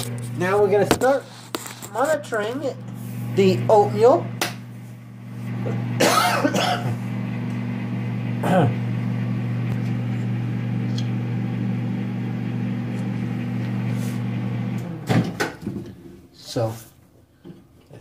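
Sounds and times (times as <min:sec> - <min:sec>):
microwave oven humming: 0:00.0 - 0:16.3.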